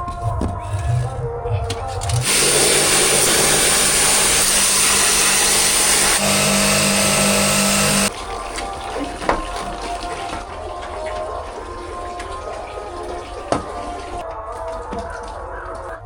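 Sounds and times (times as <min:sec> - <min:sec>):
pressure washer motor hum: 0:02.2 - 0:08.1
pressure washer spray hiss: 0:02.2 - 0:08.1.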